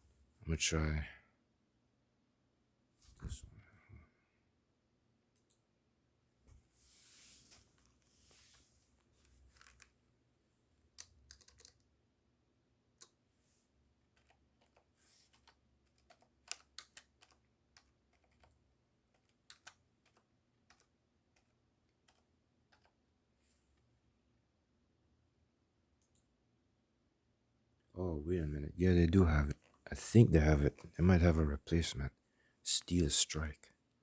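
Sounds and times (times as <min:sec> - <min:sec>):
computer keyboard typing: 0:11.0 - 0:11.9, 0:14.1 - 0:23.0.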